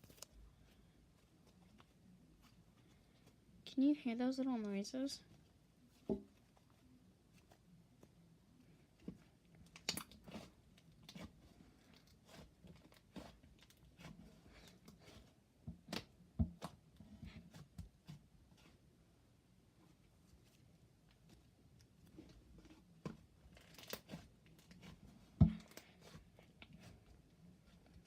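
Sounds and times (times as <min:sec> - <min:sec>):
slime squishing with pops: 0:09.1 - 0:18.3, 0:22.8 - 0:27.0.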